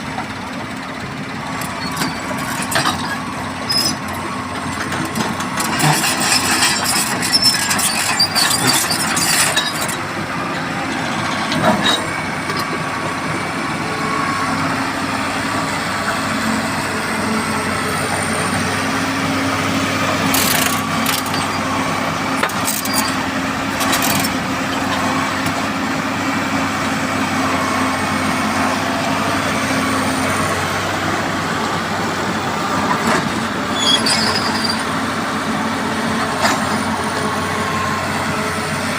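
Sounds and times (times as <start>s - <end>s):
heavy machinery engine drone: 0.0s - 38.9s.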